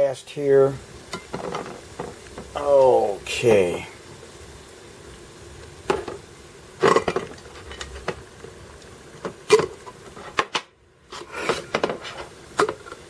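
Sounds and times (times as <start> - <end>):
boiling water hissing: 0.0 - 13.0
metal tumblers clanking on pot: 1.1 - 2.5, 6.8 - 8.3, 9.2 - 13.0.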